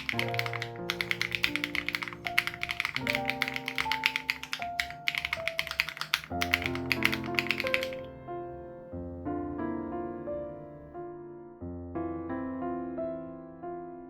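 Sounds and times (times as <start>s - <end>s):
fast typing on mechanical keyboard: 0.0s - 8.1s
soft piano music: 0.0s - 14.0s.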